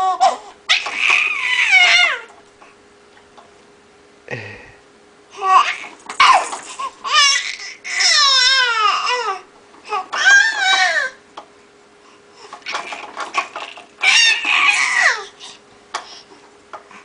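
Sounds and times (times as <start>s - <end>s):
baby laughing and squealing: 0.0s - 2.3s, 5.4s - 11.2s, 12.7s - 15.3s.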